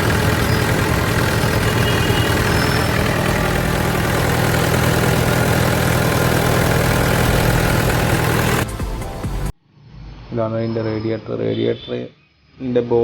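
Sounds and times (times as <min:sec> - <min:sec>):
tractor diesel engine idling: 0:00.0 - 0:09.5.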